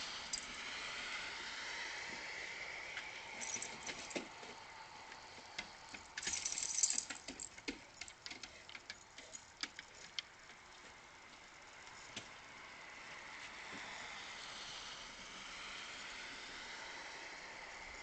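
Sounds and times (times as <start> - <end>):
light jingling and clicking: 0.1 - 0.7, 3.4 - 10.9.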